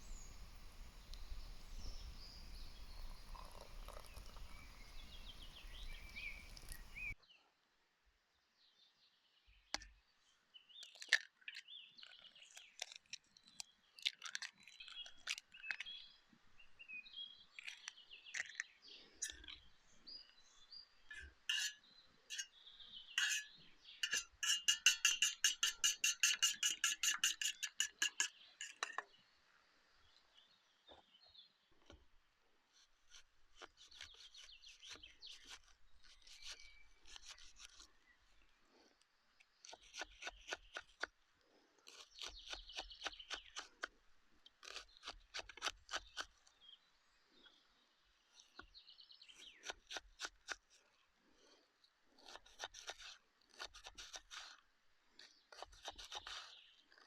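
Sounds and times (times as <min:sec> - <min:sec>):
steady hiss: 0:00.0 - 0:07.1
bird chirps and calls: 0:00.0 - 0:07.2, 0:21.1 - 0:29.0
rapid bird trill: 0:23.1 - 0:28.9.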